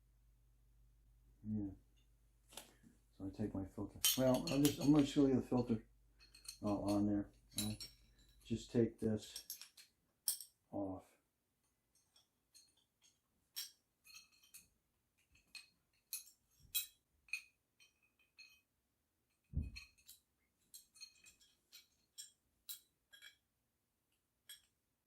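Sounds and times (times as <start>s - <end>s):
hose fittings clinking: 3.9s - 10.6s, 12.0s - 18.7s, 19.3s - 23.4s, 24.4s - 24.8s.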